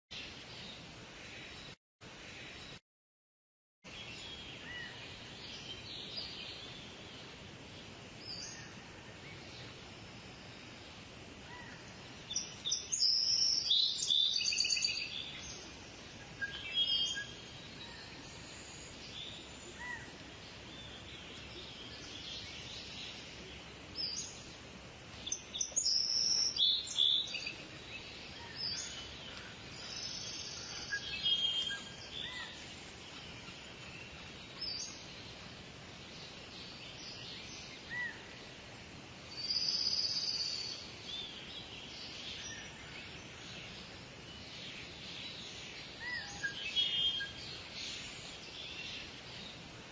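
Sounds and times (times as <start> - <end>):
steady background hiss: 0.2 - 2.8, 3.9 - 49.9
birds chirping and singing: 11.0 - 38.6, 39.3 - 49.7.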